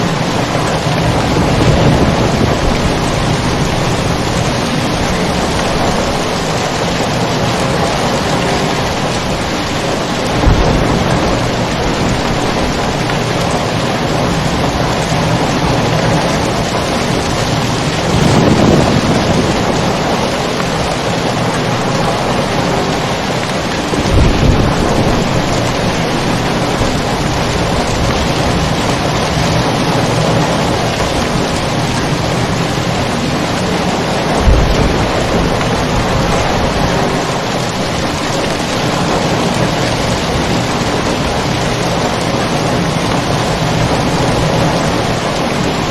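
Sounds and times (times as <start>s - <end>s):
heavy rain: 0.0s - 45.9s
low thunder rumbling: 0.0s - 45.9s.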